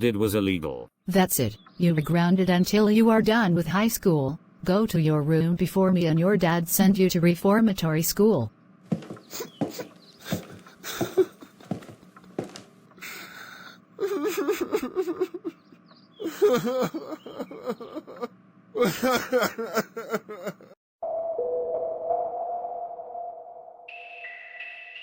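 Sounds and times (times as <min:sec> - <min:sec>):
short knocks: 0:08.9 - 0:12.8
cartoon wailing sobs: 0:14.0 - 0:15.5, 0:16.2 - 0:20.7.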